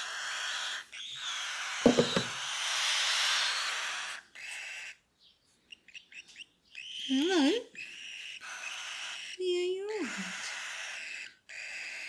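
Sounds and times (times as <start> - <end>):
sharp knocks: 1.9 - 2.4.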